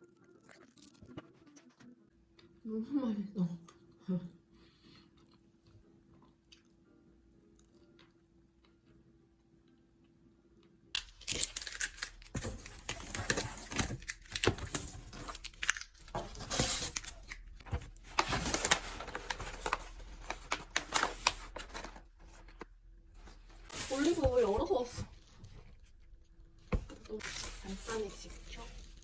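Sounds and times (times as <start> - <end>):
packaging tearing and crinkling: 11.0 - 22.6.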